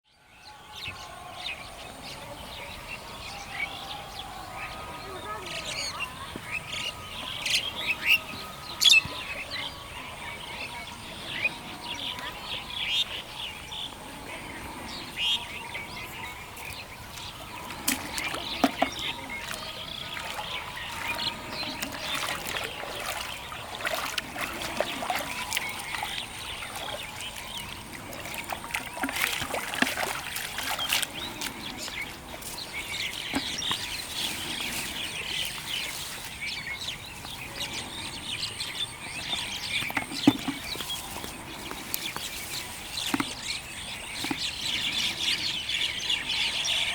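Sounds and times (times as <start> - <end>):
small birds chirping: 0.5 - 46.9
water splashing: 15.9 - 36.5, 39.1 - 45.5
water trickling: 16.0 - 36.3.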